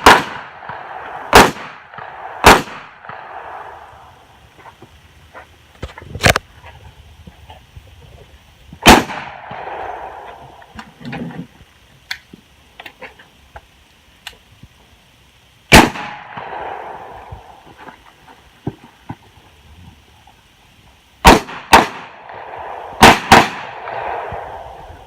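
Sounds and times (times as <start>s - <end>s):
handgun shots with echo: 1.3s - 3.2s, 23.0s - 24.2s.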